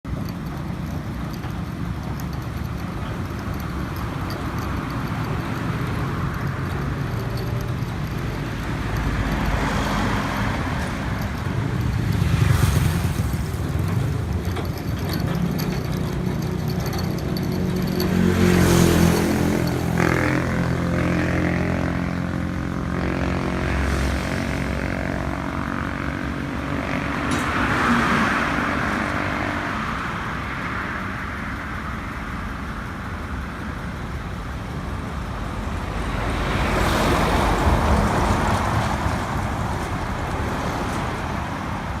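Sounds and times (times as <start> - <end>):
vehicle engine running: 0.0 - 27.0
road noise of passing traffic: 0.0 - 42.0.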